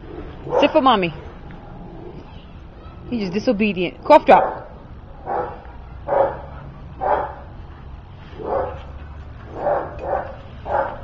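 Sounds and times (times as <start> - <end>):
dog barking: 0.5 - 0.8, 4.4 - 7.5, 8.4 - 8.8, 9.5 - 11.0.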